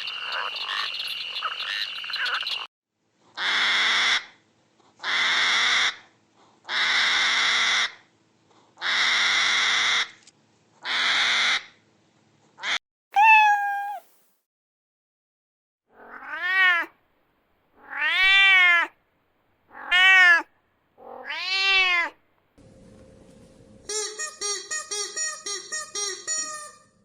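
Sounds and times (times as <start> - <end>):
animal pitched cry: 12.6 - 14.1, 15.9 - 16.9, 17.8 - 19.0, 19.7 - 22.2.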